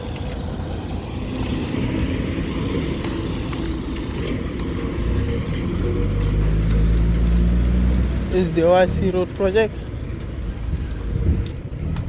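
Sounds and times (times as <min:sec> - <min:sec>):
construction machinery engines: 0:00.0 - 0:12.0
deep engine hum: 0:00.0 - 0:12.0.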